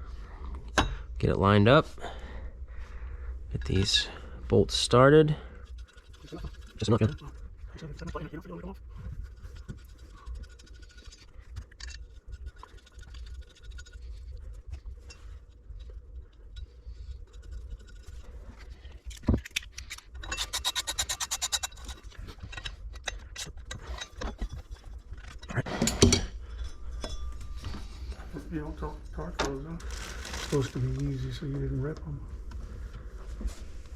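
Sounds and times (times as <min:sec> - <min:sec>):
tools scraping: 0:05.5 - 0:31.0
hand ratchet clicking: 0:19.1 - 0:24.0.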